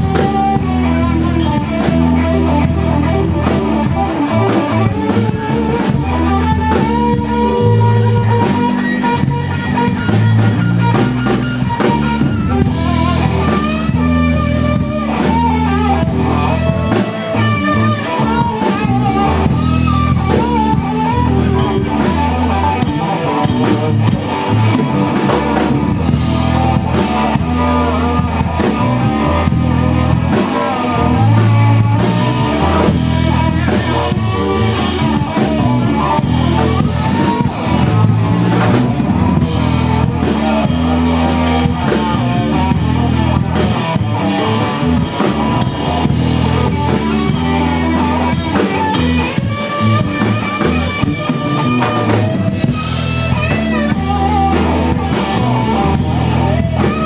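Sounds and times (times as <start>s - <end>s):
bass guitar: 0.0s - 57.0s
drum kit: 0.0s - 57.0s
electric guitar with bending notes: 0.0s - 57.0s.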